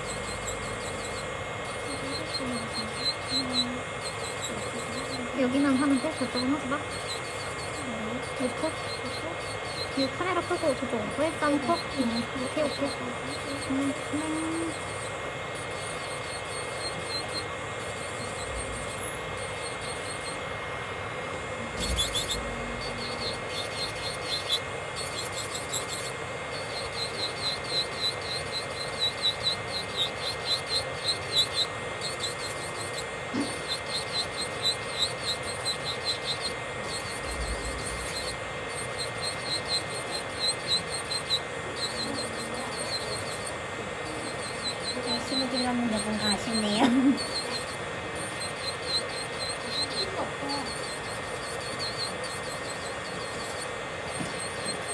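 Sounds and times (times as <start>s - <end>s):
drill bit rasping over nail: 0.0s - 20.6s, 21.3s - 54.9s
electric nail drill whining: 0.0s - 54.9s.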